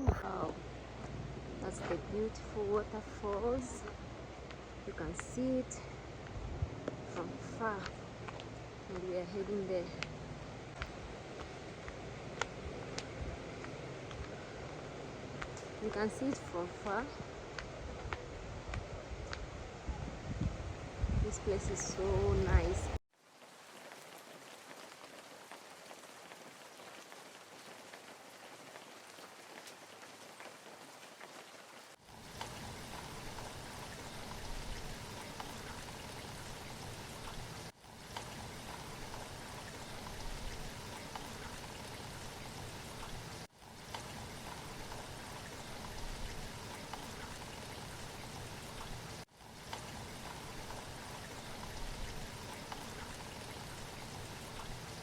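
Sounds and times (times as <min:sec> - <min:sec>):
rushing water hiss: 0:21.4 - 0:55.0.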